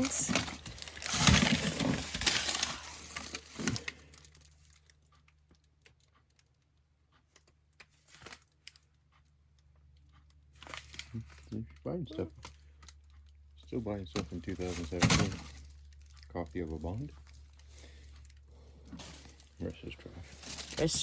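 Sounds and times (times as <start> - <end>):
plastic bag crinkling: 0.0 - 4.9, 14.1 - 21.0.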